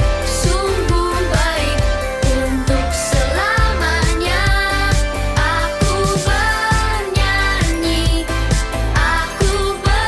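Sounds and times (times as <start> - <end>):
pop band with drum beat: 0.0 - 10.0.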